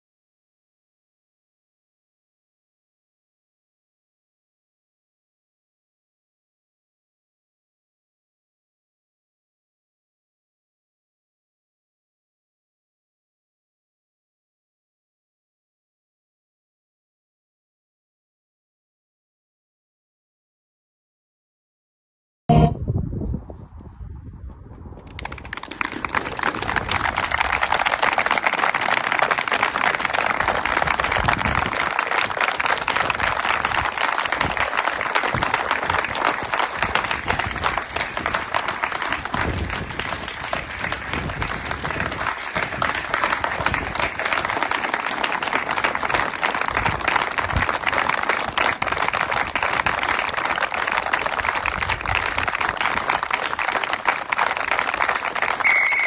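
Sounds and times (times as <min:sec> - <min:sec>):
crowd applauding: 0:25.0 - 0:56.0.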